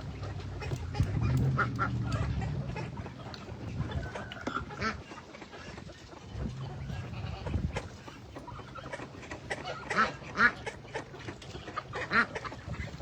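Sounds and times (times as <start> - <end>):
low rumble: 0.0 - 4.2
ducks quacking: 0.0 - 13.0.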